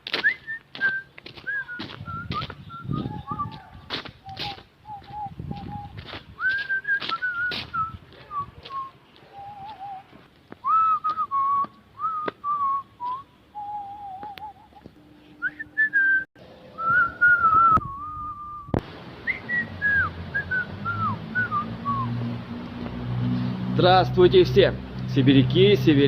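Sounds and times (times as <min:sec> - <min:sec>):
person whistling a melody: 0:00.2 - 0:03.6, 0:04.2 - 0:14.8, 0:15.4 - 0:22.2.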